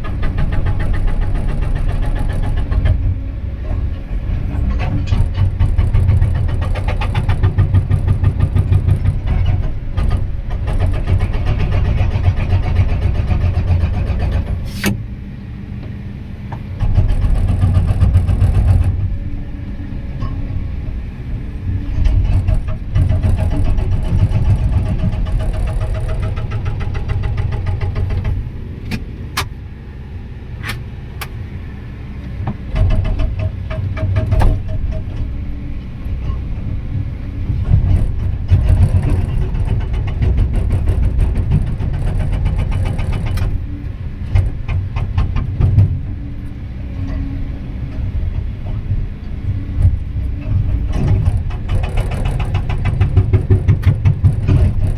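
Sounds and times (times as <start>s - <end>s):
hydraulic rock breaker hammering: 0.0s - 15.1s, 16.8s - 19.2s, 21.8s - 29.5s, 32.5s - 35.3s, 50.6s - 54.9s
diesel engine running: 0.0s - 54.9s.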